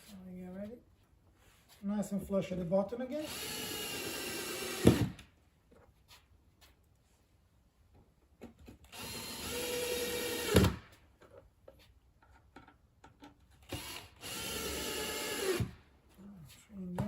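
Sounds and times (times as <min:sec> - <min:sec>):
power drill driving screws: 0:03.2 - 0:05.2, 0:08.8 - 0:10.9, 0:13.6 - 0:15.8.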